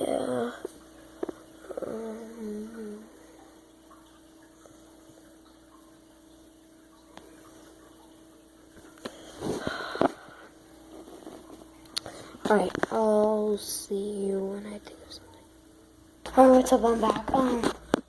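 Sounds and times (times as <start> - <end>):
low electrical hum: 0.0 - 18.0
short hummed voice: 1.7 - 3.2.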